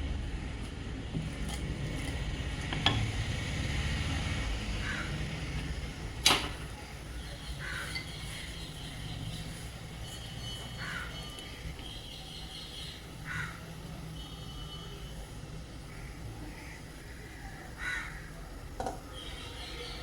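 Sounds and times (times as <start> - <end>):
kitchen utensils knocking: 2.8 - 3.2, 18.8 - 19.1.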